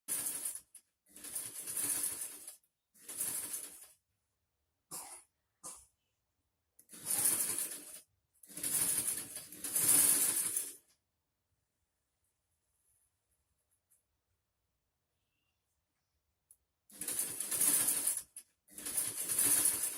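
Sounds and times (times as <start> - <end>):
electric sewing machine running: 6.9 - 10.7, 16.9 - 19.9.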